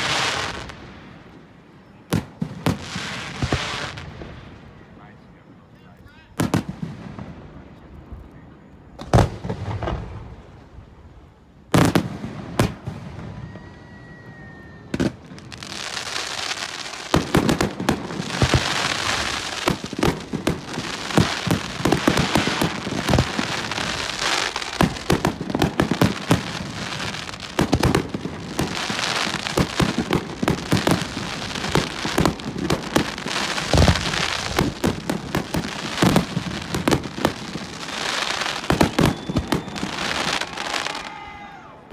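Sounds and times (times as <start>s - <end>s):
fireworks crackling and rapid bangs: 0.0s - 5.3s, 6.4s - 8.2s, 8.9s - 41.9s
firework shell bursts: 18.4s - 40.6s.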